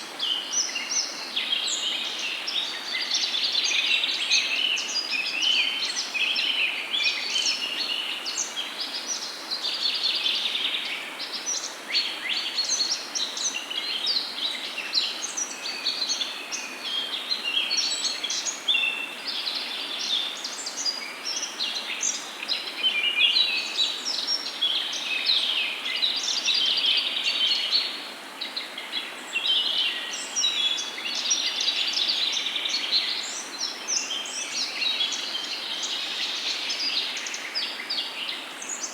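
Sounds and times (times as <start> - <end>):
soft steady hiss: 0.0 - 38.9.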